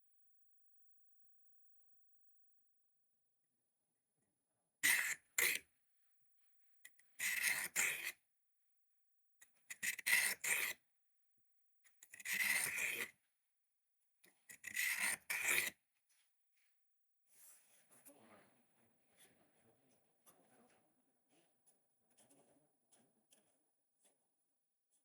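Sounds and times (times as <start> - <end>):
knife rasping on sharpener: 7.2 - 8.1, 9.7 - 10.7, 12.2 - 13.1, 14.5 - 15.7.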